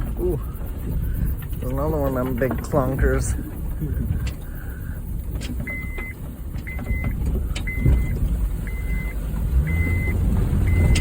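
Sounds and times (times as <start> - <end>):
car engine low rumble: 0.0 - 11.0
car warning chime beeps: 5.4 - 11.0.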